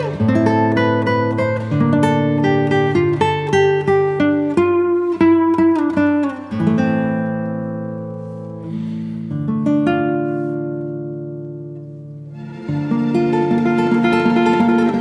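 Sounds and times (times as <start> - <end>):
acoustic guitar music: 0.0 - 15.0.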